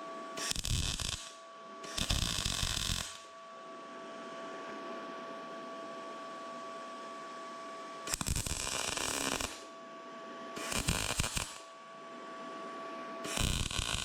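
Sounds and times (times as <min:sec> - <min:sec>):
welder arc crackling and buzzing: 0:00.0 - 0:03.6, 0:06.3 - 0:09.8, 0:10.4 - 0:12.0, 0:13.2 - 0:14.0
steady hum with faint tones: 0:00.0 - 0:14.0.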